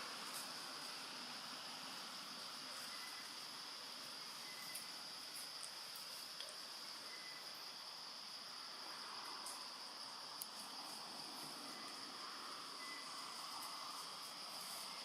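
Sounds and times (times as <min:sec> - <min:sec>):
high-pitched insect drone: 0:00.4 - 0:05.6, 0:06.9 - 0:15.0.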